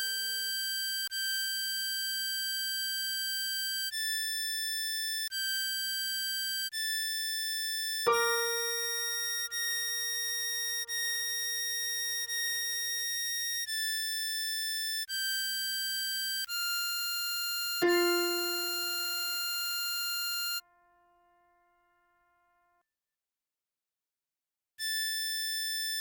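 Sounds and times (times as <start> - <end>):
harmonica melody: 8.1 - 12.7, 17.8 - 20.6.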